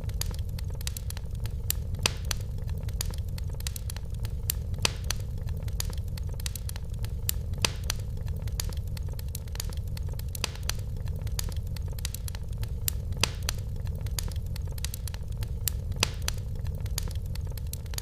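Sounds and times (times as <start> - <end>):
fire crackling and popping: 0.0 - 18.0
low fire rumble: 0.0 - 18.0.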